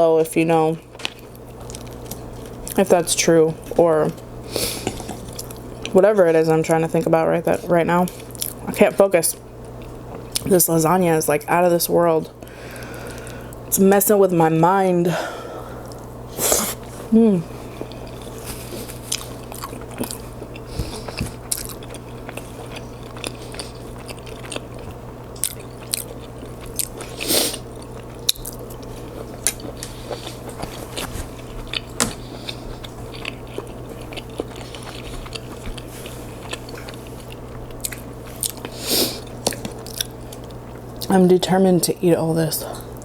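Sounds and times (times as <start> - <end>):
chewing: 17.6 - 41.1.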